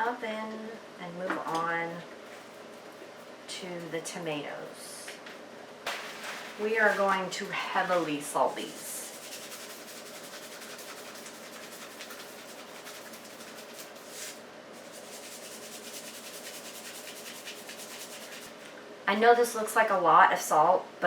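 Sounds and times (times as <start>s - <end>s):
salt dispensing scratchy rasp: 8.6s - 18.6s.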